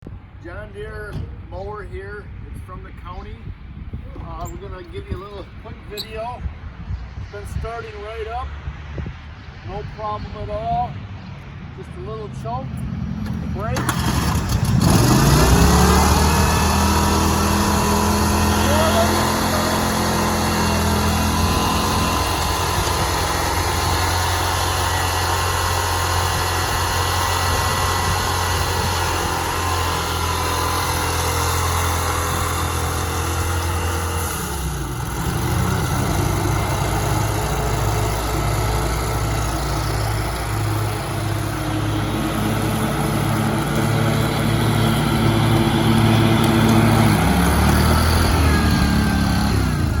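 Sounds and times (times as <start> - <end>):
riding lawn mower engine running: 12.7 - 50.0.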